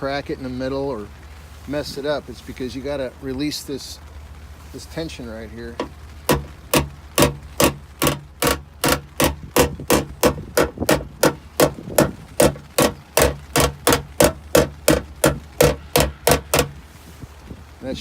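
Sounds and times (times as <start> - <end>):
hammer tapping sheet metal: 5.8 - 16.8.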